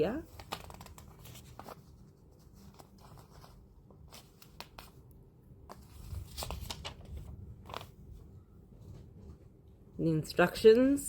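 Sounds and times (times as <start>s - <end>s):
paper and packaging rustling: 0.0s - 5.1s, 5.7s - 8.3s.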